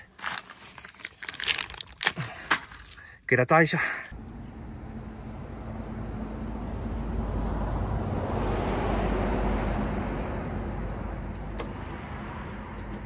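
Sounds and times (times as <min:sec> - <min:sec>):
low hum: 0:04.2 - 0:13.0
road vehicle passing: 0:04.2 - 0:13.0.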